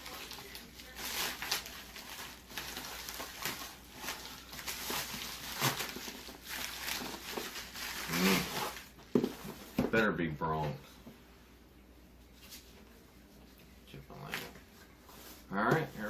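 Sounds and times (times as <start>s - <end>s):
cardboard rustling and tearing: 0.0s - 8.9s.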